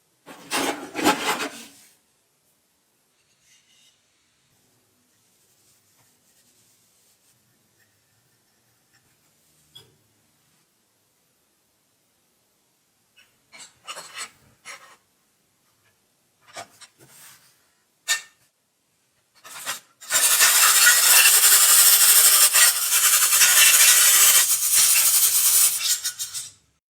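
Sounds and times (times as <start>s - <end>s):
rubbing and scraping on a surface: 0.3s - 2.0s, 3.1s - 9.8s, 13.2s - 15.1s, 15.8s - 18.3s, 19.4s - 26.6s.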